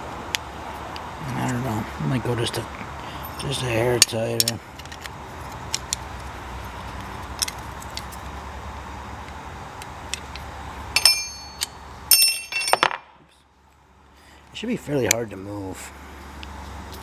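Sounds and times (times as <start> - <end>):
steady background hiss: 0.0 - 17.0
metal tool clinking: 3.2 - 6.0, 6.7 - 8.2, 10.9 - 13.0.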